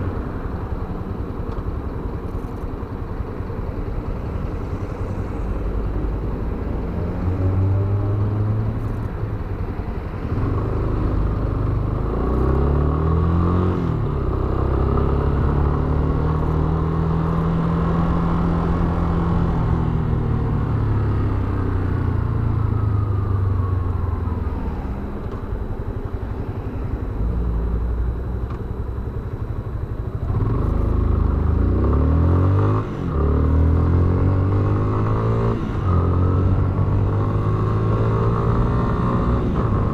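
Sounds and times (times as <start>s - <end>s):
wind and road noise: 0.0s - 39.9s
motorcycle engine revving: 30.2s - 39.9s.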